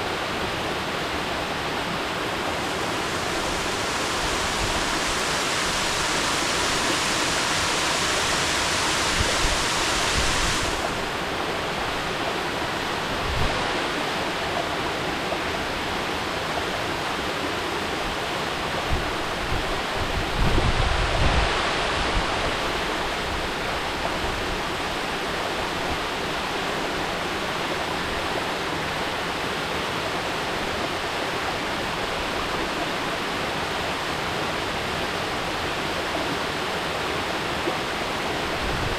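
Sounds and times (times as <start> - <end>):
waterfall rushing: 0.0 - 18.7.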